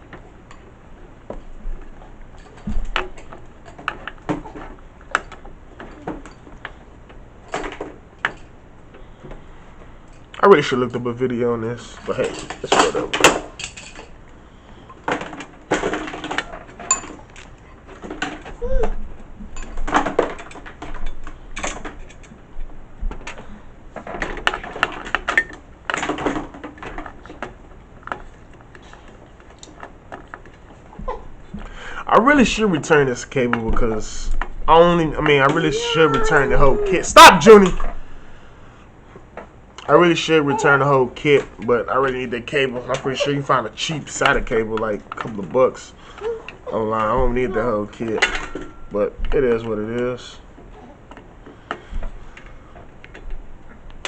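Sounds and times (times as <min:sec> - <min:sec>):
clicking and rattling of pc parts: 0:23.1 - 0:30.8.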